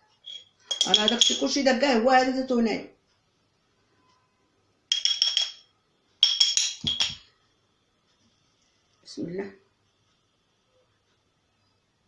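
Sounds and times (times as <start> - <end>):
spoon clinking against glass: 0.2 - 1.6, 4.9 - 7.3.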